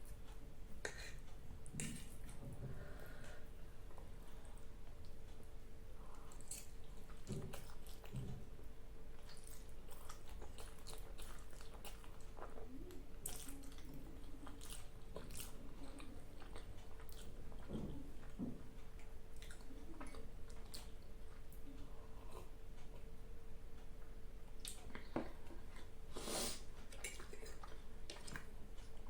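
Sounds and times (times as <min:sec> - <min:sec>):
chewing noodles: 0:06.0 - 0:08.5, 0:09.1 - 0:23.1, 0:26.8 - 0:29.0
swallowing thuds: 0:17.6 - 0:18.7.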